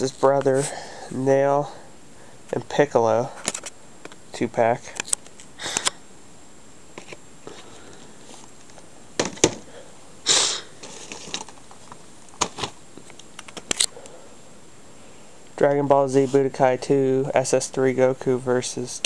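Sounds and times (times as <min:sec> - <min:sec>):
packaging clicks and knocks: 0:09.2 - 0:09.6
packaging rustling scrape: 0:10.8 - 0:12.8.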